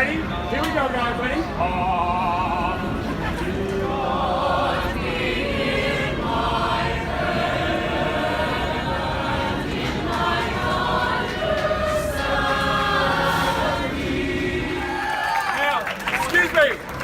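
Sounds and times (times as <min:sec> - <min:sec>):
choir singing a cappella: 0:01.5 - 0:15.1.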